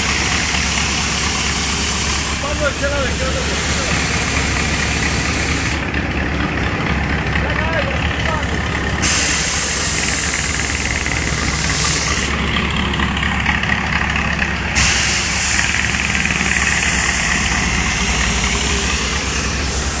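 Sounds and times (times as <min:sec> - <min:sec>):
hiss: 0:00.0 - 0:05.8, 0:09.0 - 0:12.6, 0:14.7 - 0:20.0
diesel machinery running: 0:00.0 - 0:20.0.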